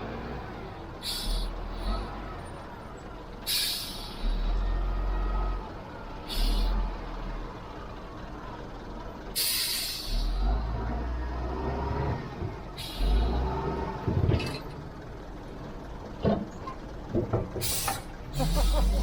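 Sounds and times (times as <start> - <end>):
diesel machinery rumbling: 0.0 - 19.0
air brake hissing: 1.0 - 1.6, 3.4 - 4.2, 6.3 - 6.8, 9.4 - 10.4, 12.8 - 13.2, 17.6 - 19.0.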